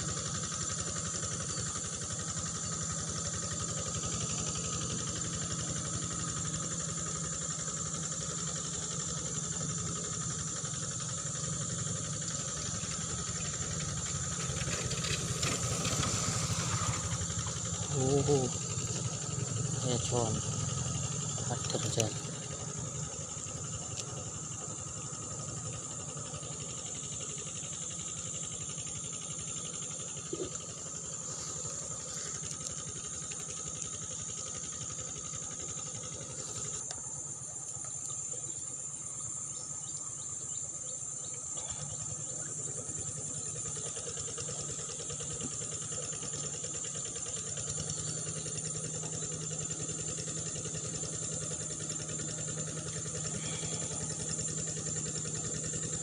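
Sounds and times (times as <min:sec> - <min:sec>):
crickets and insects shrilling: 0:12.1 - 0:56.0.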